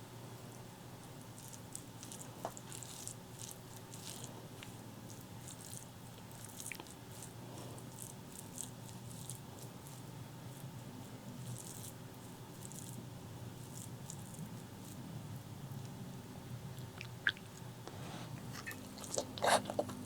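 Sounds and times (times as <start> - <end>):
wet chewing clicks: 5.5 - 7.3, 16.8 - 17.7, 18.4 - 20.0.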